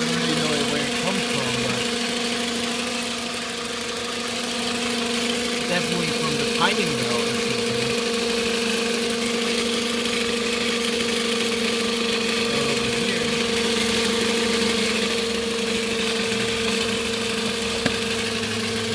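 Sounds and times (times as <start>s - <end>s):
constant tone over engine: 0.0s - 18.9s.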